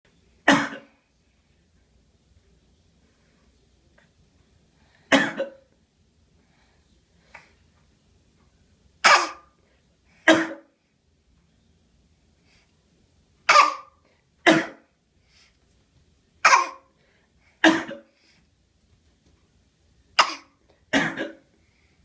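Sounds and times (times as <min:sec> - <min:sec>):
baby fake coughing: 0:00.5 - 0:00.9, 0:05.1 - 0:05.6, 0:09.0 - 0:09.5, 0:10.3 - 0:10.7, 0:13.5 - 0:14.8, 0:16.4 - 0:16.9, 0:17.6 - 0:18.1, 0:20.2 - 0:21.5.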